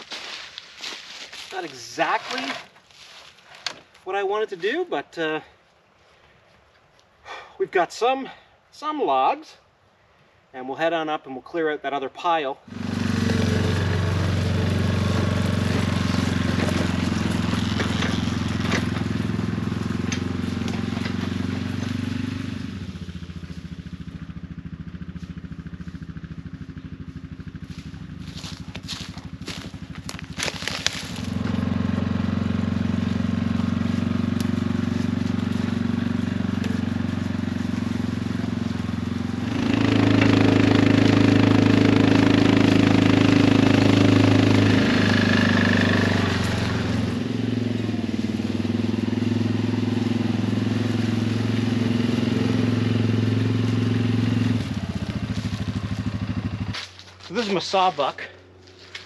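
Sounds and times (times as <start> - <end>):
quad bike engine running: 12.7 - 59.0.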